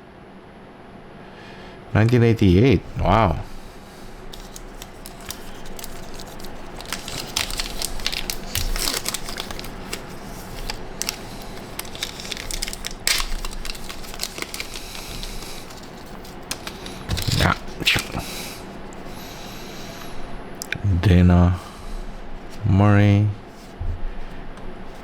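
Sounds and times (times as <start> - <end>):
plastic wrapper crinkling: 3.8 - 20.3.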